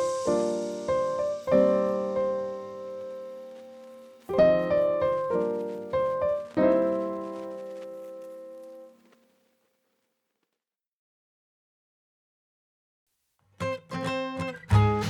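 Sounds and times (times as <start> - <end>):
gentle piano chords: 0.0 - 9.0.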